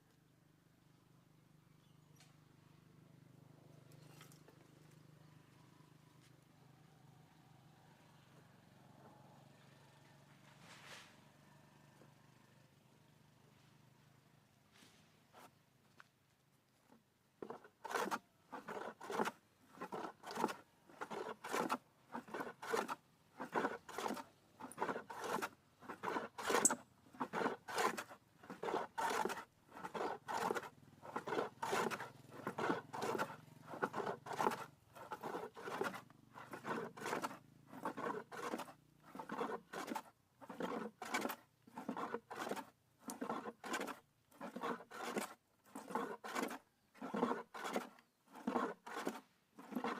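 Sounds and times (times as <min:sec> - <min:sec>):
hand tool rasping on wood: 0:17.4 - 0:49.9.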